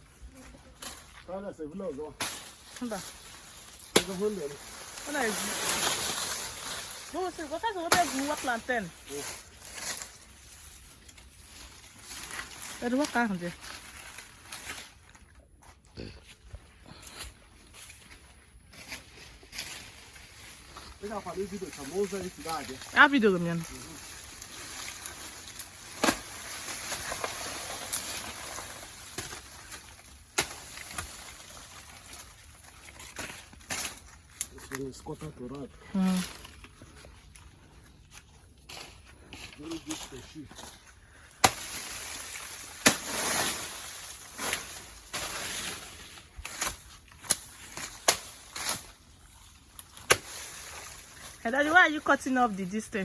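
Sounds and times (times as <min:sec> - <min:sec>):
rustling: 0:02.1 - 0:15.4, 0:17.0 - 0:53.0
blade chopping stalks: 0:03.7 - 0:06.6, 0:24.6 - 0:32.2, 0:41.3 - 0:49.0, 0:49.8 - 0:50.9.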